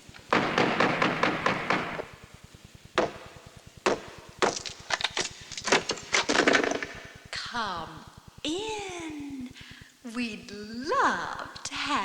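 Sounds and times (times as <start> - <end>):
sharp wooden knocks: 0.3 - 2.1, 3.0 - 7.0.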